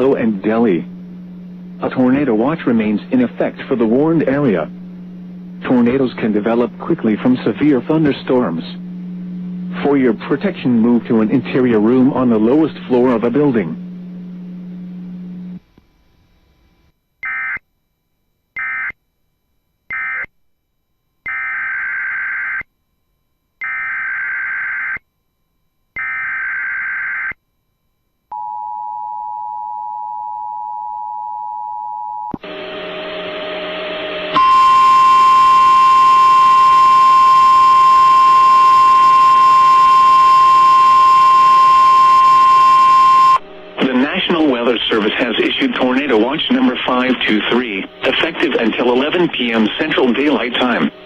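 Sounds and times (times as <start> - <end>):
steady warning alarm tone: 17.2 - 17.6, 18.6 - 19.0, 19.9 - 20.3, 21.3 - 22.6, 23.6 - 25.0, 26.0 - 27.4, 28.3 - 50.9
buzzy tone: 32.4 - 51.0
two-tone attention signal: 34.4 - 43.4.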